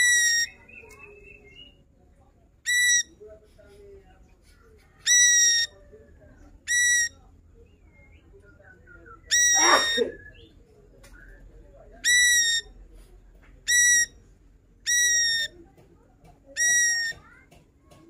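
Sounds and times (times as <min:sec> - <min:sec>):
bird whistled calls: 0:02.7 - 0:03.1, 0:06.7 - 0:07.1, 0:08.9 - 0:10.6, 0:13.7 - 0:14.1, 0:14.9 - 0:15.5, 0:16.6 - 0:17.1
harsh rasp in bird call: 0:09.3 - 0:10.2, 0:14.9 - 0:15.5.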